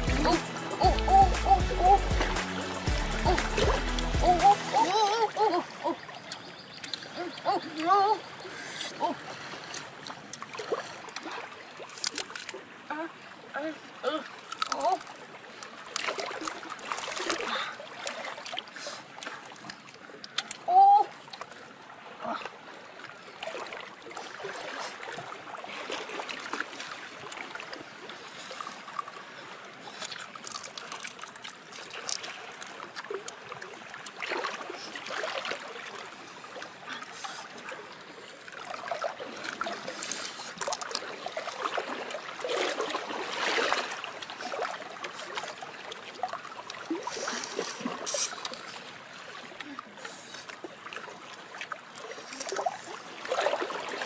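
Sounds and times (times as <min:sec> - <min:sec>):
water trickling and splashing: 0:00.0 - 0:54.0
small clicks and crackles: 0:11.2 - 0:12.6, 0:14.4 - 0:17.0, 0:29.9 - 0:33.4, 0:40.0 - 0:41.2, 0:52.0 - 0:52.7.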